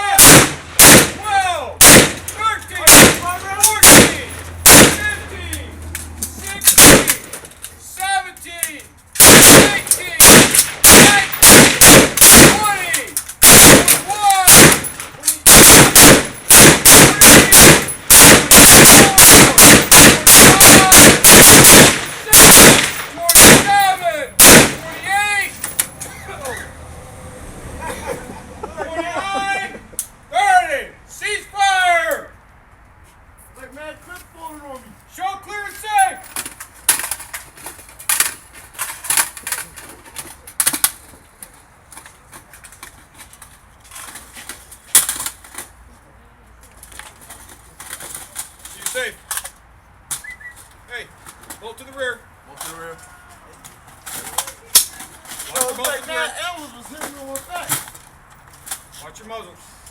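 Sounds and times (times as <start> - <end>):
rifles clicking and clattering: 0.0 - 26.7, 35.6 - 45.9, 46.6 - 59.9
rifle shots: 0.2 - 1.2, 1.8 - 5.2, 6.7 - 7.4, 9.2 - 12.8, 13.4 - 23.8, 24.4 - 25.0.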